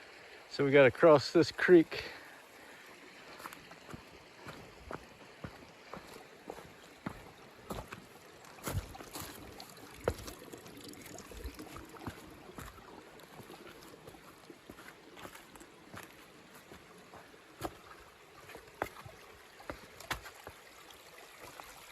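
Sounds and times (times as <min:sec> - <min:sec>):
creek water running over rocks: 0:00.0 - 0:21.9
footsteps on stones: 0:03.3 - 0:10.5, 0:11.4 - 0:20.6.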